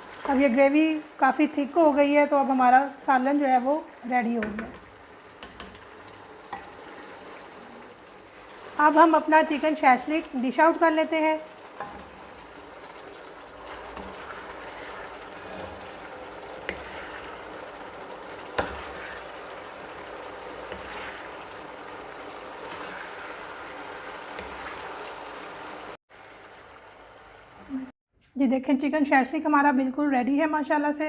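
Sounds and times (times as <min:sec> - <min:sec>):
thick gravy bubbling: 0:04.9 - 0:26.3.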